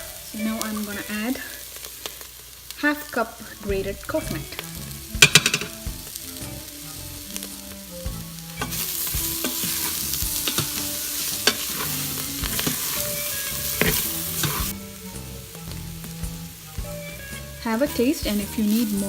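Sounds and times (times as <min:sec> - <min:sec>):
chickpeas sizzling: 0:00.0 - 0:19.0
spoon scraping pot: 0:05.2 - 0:05.8, 0:08.6 - 0:14.8
spoon knocking against pot: 0:05.2 - 0:05.9.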